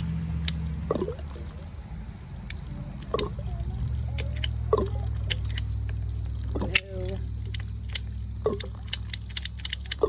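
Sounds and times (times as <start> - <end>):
low mechanical hum: 0.0 - 10.0
short sharp clicks: 2.5 - 10.0.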